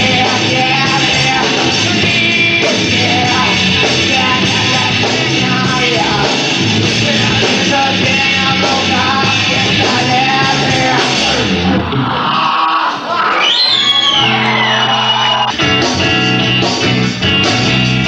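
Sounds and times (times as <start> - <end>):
live rock band playing: 0.0 - 13.1, 13.7 - 18.0
person singing: 0.0 - 13.3.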